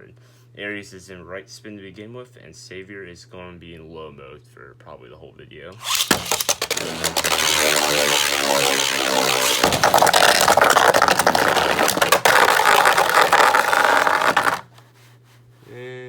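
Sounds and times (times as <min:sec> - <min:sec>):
spinning tops clashing: 0:05.8 - 0:14.6
spinning tops whirring: 0:05.8 - 0:14.7.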